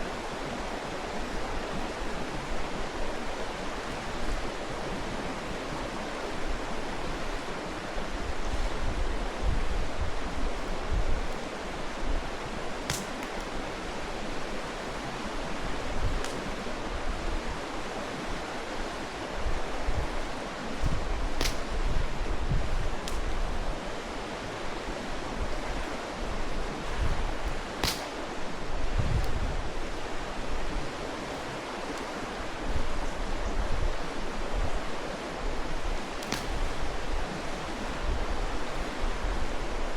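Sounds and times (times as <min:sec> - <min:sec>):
stream rushing: 0:00.0 - 0:39.9
wind buffeting microphone: 0:08.0 - 0:14.6, 0:15.3 - 0:18.5, 0:19.2 - 0:31.1, 0:32.3 - 0:39.9
campfire popping: 0:12.8 - 0:13.6, 0:16.2 - 0:16.6, 0:20.9 - 0:21.8, 0:22.9 - 0:23.4, 0:27.8 - 0:28.2, 0:36.1 - 0:37.0.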